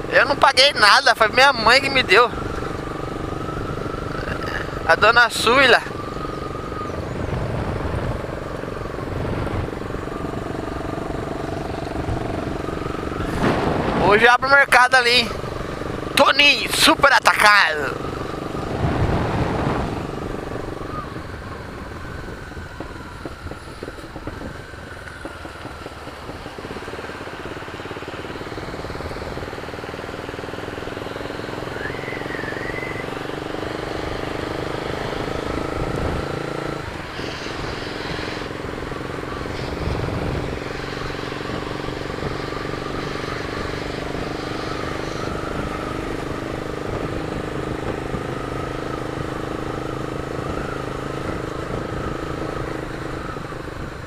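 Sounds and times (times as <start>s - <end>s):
motorcycle engine running: 5.6s - 17.0s, 17.9s - 54.0s
wind rush on microphone: 5.9s - 16.2s, 18.1s - 29.9s, 33.8s - 54.0s.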